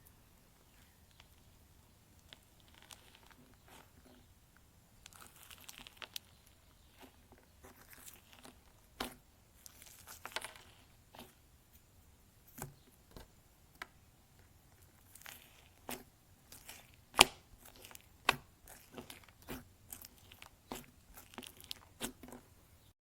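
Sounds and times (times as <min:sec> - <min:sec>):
slime squished by hand: 0:14.9 - 0:22.4.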